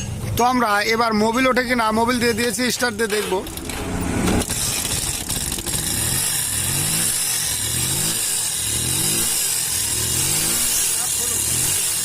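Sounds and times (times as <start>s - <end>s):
motorcycle engine revving: 3.4s - 12.0s.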